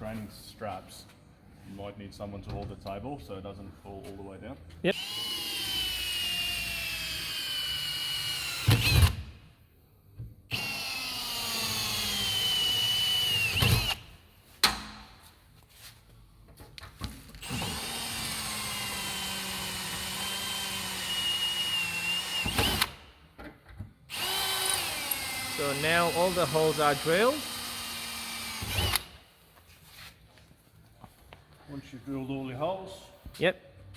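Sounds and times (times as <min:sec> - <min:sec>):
power drill boring sheet metal: 0:05.0 - 0:09.2, 0:10.5 - 0:14.1, 0:17.4 - 0:23.0, 0:24.1 - 0:29.2.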